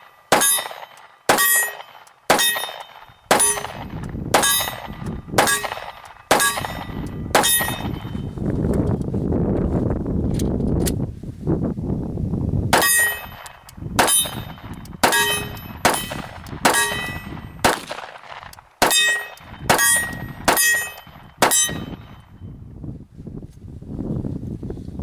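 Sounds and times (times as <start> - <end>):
pistol shots: 0.0 - 8.2, 12.7 - 22.2
metallic ring of steel target: 0.0 - 8.4, 12.7 - 18.0, 18.8 - 22.5.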